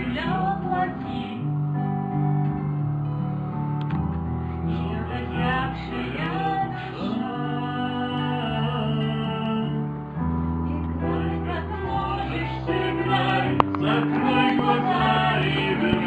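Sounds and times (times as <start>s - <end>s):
acoustic guitar: 0.0s - 16.0s
person singing: 4.7s - 9.9s, 11.0s - 16.0s.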